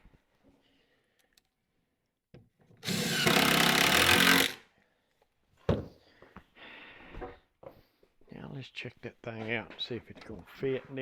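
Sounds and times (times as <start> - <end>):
power drill driving screw into wood: 2.8 - 4.6.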